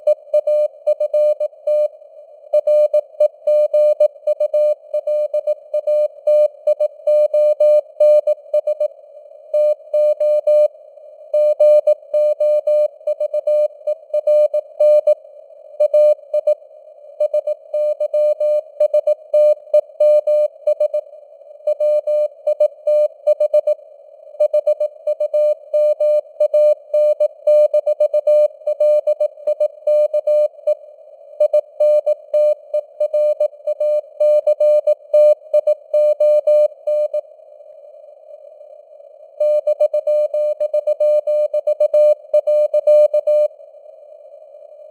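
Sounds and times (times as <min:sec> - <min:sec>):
morse code beep tone: 0:21.7 - 0:23.8, 0:24.4 - 0:30.6, 0:39.4 - 0:43.5.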